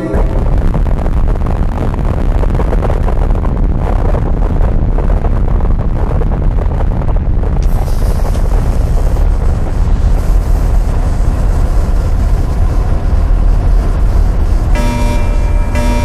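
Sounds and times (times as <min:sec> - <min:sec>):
deep spaceship rumble: 0:00.0 - 0:16.0
bright hiss: 0:07.6 - 0:16.0.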